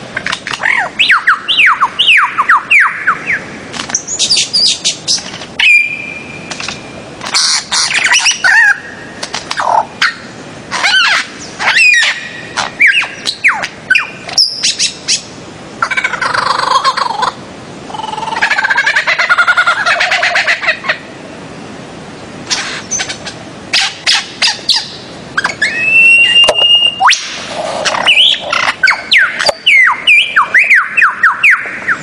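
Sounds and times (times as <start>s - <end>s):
bird chattering: 22.5s - 32.0s
birds calling sharply: 22.5s - 32.0s.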